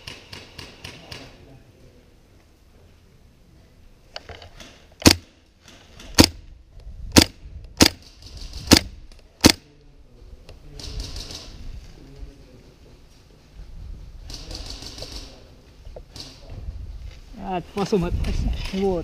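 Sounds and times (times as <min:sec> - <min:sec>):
airsoft gun shots: 0:05.0 - 0:05.4, 0:06.2 - 0:06.4, 0:07.2 - 0:08.0, 0:08.7 - 0:09.6
soft rustle: 0:08.1 - 0:19.0.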